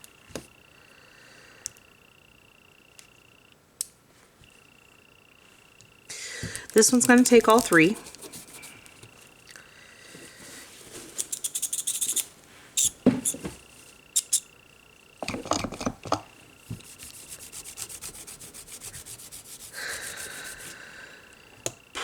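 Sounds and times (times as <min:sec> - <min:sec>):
scraping strokes on hard surface: 0:16.8 - 0:20.8.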